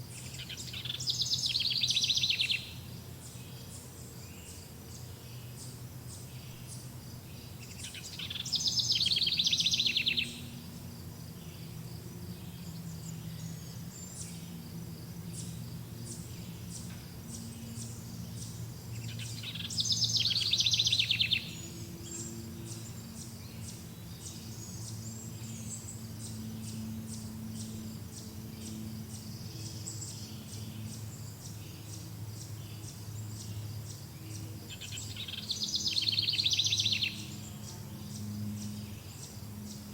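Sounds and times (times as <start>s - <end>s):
low steady hum: 0.0s - 39.9s
faint high bird chirps: 0.1s - 4.6s, 7.4s - 10.5s, 15.3s - 27.8s, 34.2s - 39.4s
bird trilled song: 0.1s - 10.6s, 15.3s - 39.8s.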